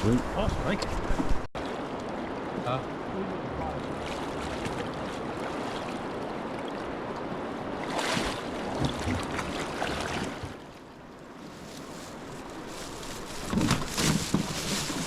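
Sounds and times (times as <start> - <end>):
river water rushing: 1.6 - 11.4.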